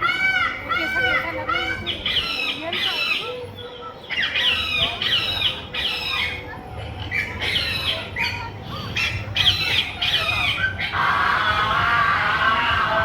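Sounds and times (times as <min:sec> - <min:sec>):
continuous bird chatter: 0:00.0 - 0:13.0
bird squawking: 0:07.1 - 0:13.0.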